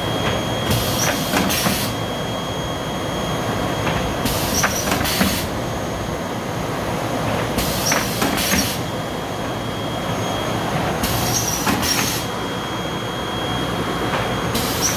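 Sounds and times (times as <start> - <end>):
washing machine drone: 0.0 - 14.9.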